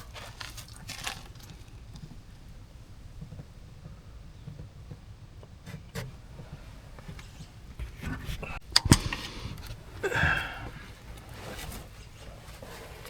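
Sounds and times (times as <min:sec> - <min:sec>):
scraping rustle: 0:00.0 - 0:02.6, 0:05.6 - 0:13.0
clicks of tools and parts: 0:07.9 - 0:09.8.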